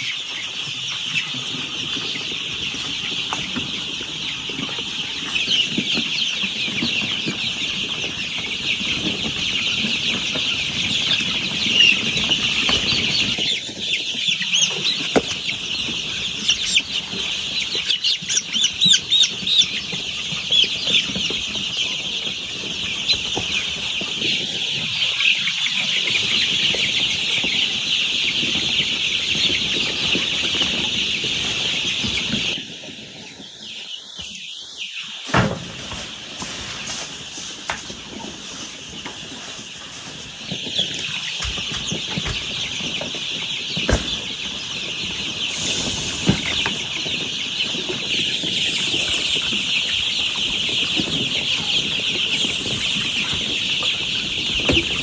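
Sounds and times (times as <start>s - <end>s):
chicks peeping: 0.0s - 55.0s
wing flutters: 45.0s - 47.9s.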